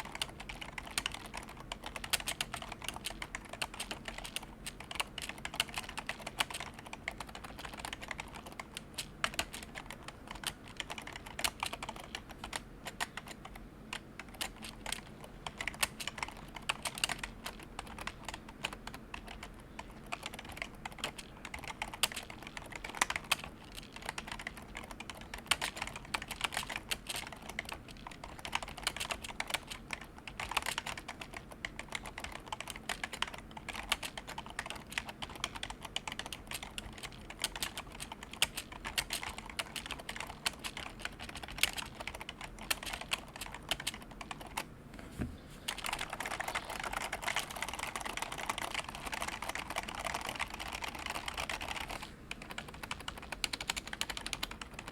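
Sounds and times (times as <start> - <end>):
soft keyboard typing: 0.0 - 44.7, 45.3 - 54.9.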